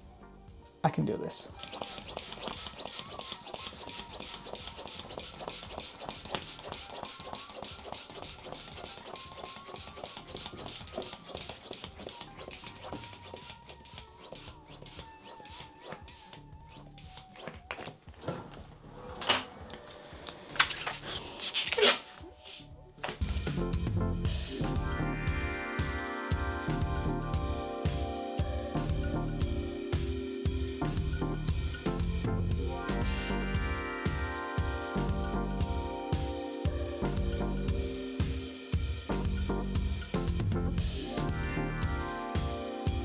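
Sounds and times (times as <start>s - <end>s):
rubber balloon squeaking: 1.5s - 23.5s.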